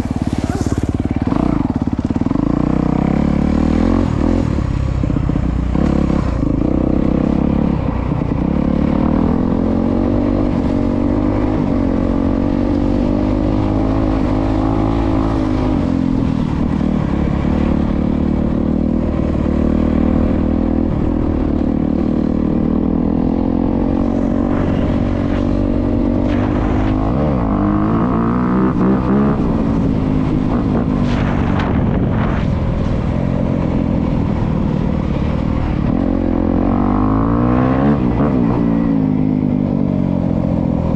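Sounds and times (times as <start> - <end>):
dirt bike engine revving: 0.0 - 4.8.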